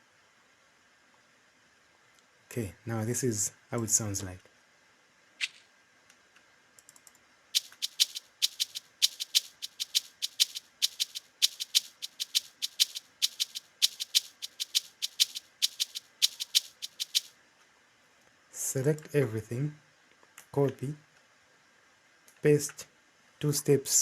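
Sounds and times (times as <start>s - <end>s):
shaker loop: 7.6s - 17.3s.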